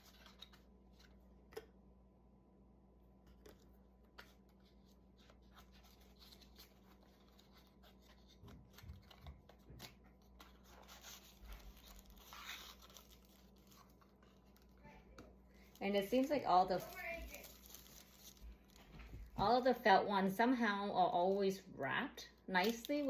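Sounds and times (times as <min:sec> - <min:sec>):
soft paper rustling: 0:03.3 - 0:19.7.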